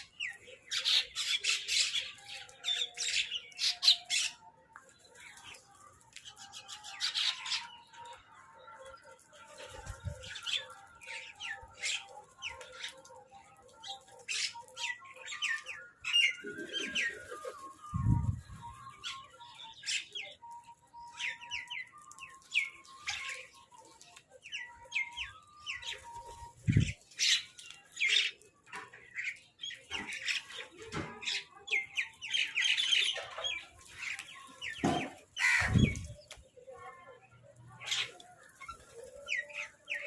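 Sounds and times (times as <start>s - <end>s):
crows and mynahs squawking: 34.8s - 36.2s.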